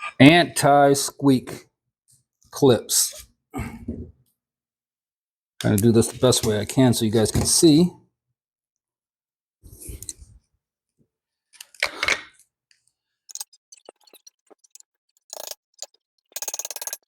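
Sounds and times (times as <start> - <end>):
metal parts scraping rattle: 13.3 - 17.0
sharp metallic clicks and clinks: 13.3 - 17.0.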